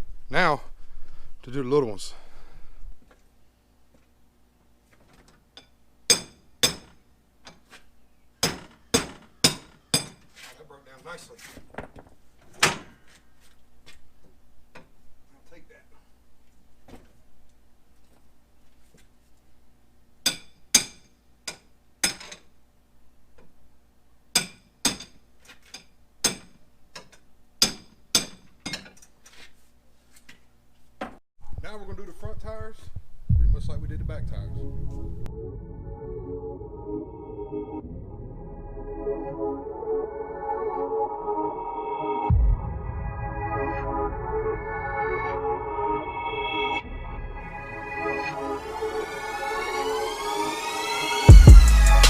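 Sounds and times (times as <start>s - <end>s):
hammer striking metal: 6.1s - 7.0s, 8.4s - 10.3s, 20.2s - 22.4s, 27.6s - 28.8s.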